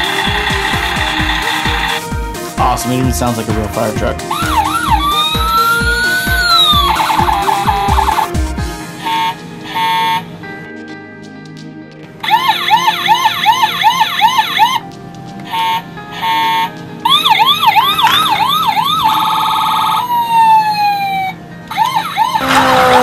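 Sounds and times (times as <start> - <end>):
toy electronic siren: 0.0 - 2.0, 4.3 - 8.4, 9.0 - 10.3, 12.2 - 14.8, 15.6 - 23.0
short beeps: 6.5 - 8.3.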